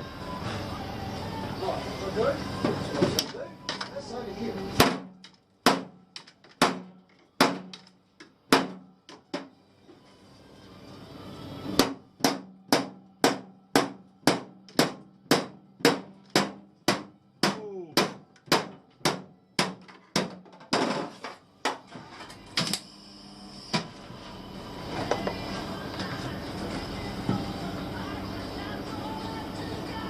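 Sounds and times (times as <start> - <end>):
hammer striking metal: 11.8 - 20.4.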